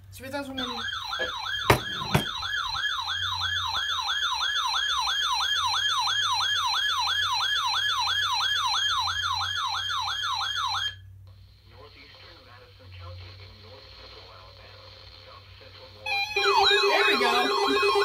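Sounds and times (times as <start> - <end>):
warbling alarm siren: 0.5 - 11.0, 16.1 - 18.0.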